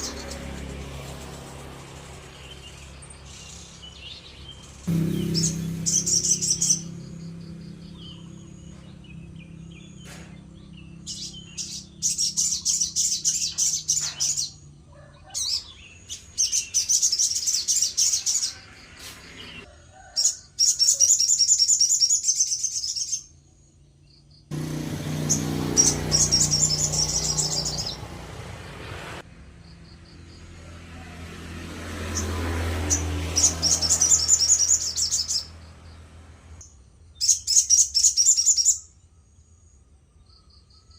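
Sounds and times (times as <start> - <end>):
songbird trilling: 2.0 - 14.6, 25.2 - 28.1, 32.9 - 35.5, 37.2 - 39.0.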